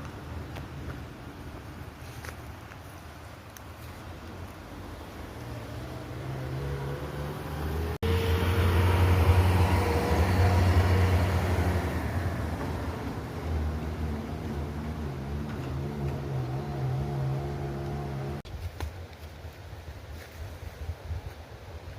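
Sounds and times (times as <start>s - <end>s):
vehicle engine humming: 4.1s - 18.4s.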